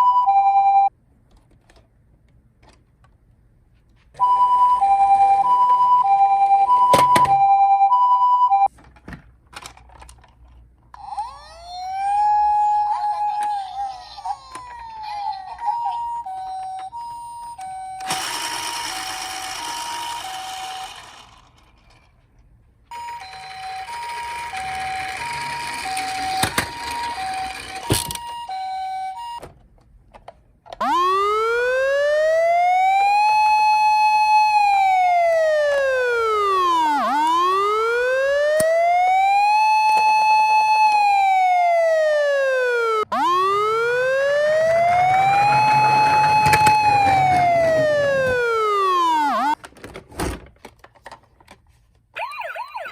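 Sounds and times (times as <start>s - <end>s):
ambulance two-tone siren: 0.0s - 0.9s, 4.2s - 8.7s, 11.2s - 13.5s, 15.6s - 21.3s, 22.9s - 29.5s, 30.8s - 49.6s, 52.2s - 52.9s
police car wail siren: 4.2s - 8.1s, 11.0s - 13.8s, 14.6s - 21.3s, 22.9s - 29.4s, 30.8s - 49.6s, 52.2s - 52.9s.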